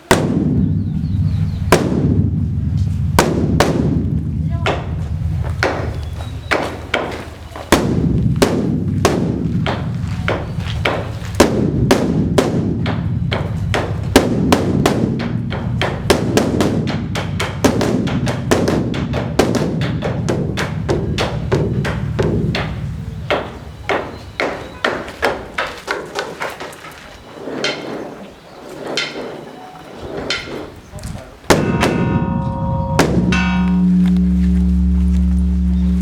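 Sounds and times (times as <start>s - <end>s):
deep drum boom: 0.1s - 23.6s, 31.5s - 36.0s
large drum beaten rapidly: 1.2s - 23.6s, 31.5s - 36.0s.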